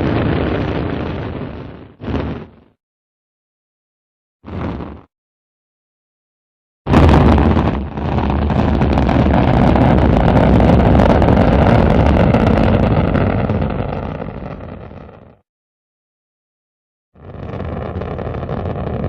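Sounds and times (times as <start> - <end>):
rocket launch roar: 0.0 - 2.7, 6.9 - 15.4, 17.2 - 19.0.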